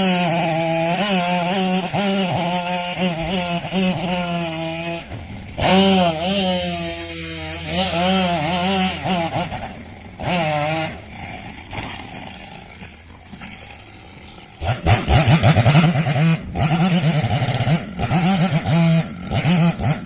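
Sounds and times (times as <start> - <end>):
chainsaw engine revving: 0.0 - 20.0.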